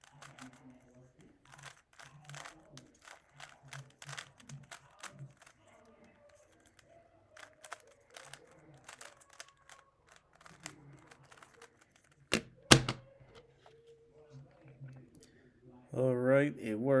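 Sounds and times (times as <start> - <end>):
speed cube plastic clicks: 0.0 - 13.0.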